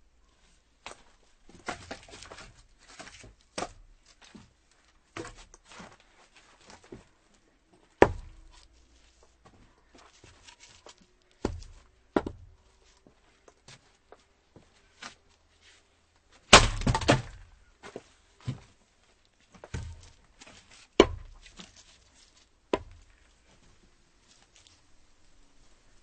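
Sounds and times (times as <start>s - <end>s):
axe chopping wood: 8.0s - 8.5s, 16.5s - 17.5s, 21.0s - 21.5s.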